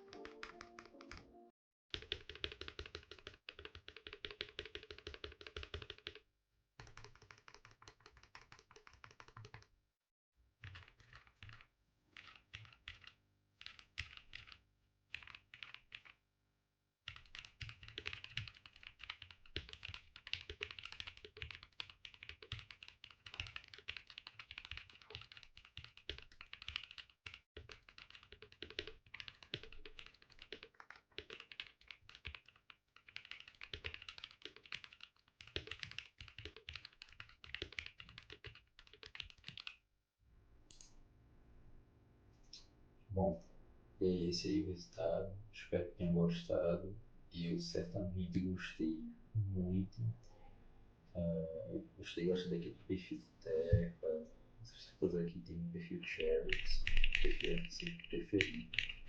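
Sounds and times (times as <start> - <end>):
mechanical keyboard typing: 0.0 - 1.3, 1.9 - 6.2, 6.8 - 9.7, 10.6 - 11.6, 12.2 - 16.2, 17.1 - 39.8, 56.1 - 59.0.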